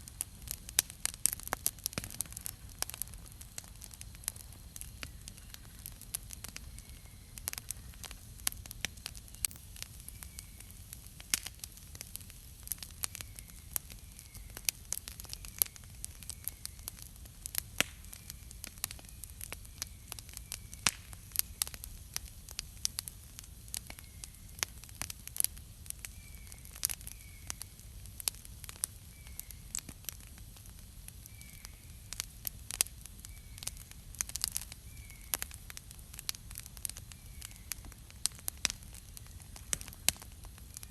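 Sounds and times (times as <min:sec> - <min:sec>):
campfire crackling: 0:00.0 - 0:40.9
faint high chirps: 0:09.3 - 0:10.8.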